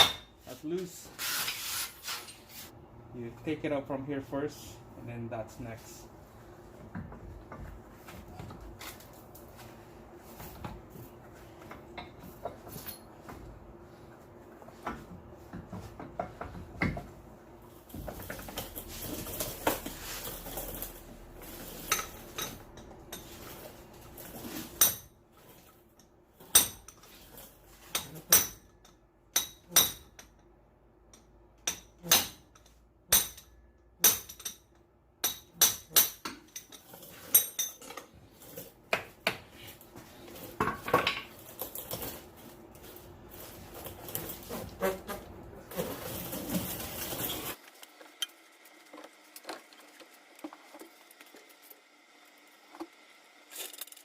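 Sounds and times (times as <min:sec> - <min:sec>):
tool clatter: 0:35.3 - 0:39.2.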